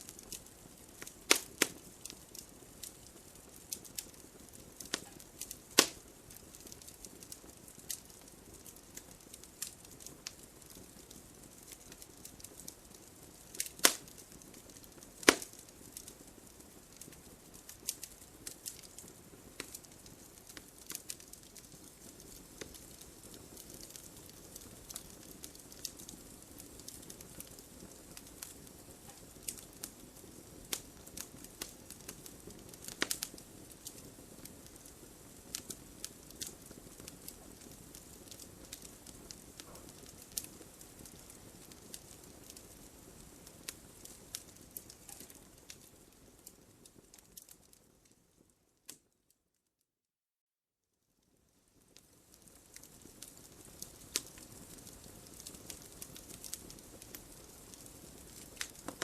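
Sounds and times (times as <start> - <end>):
burning wood crackling and popping: 0.0 - 49.2, 51.2 - 59.0
fire hissing: 0.1 - 47.1.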